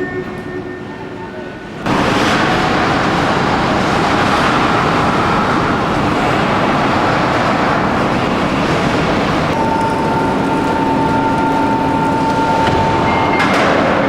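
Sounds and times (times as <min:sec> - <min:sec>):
hum with high tone: 0:00.0 - 0:14.0
heavy machinery roar: 0:01.8 - 0:14.0.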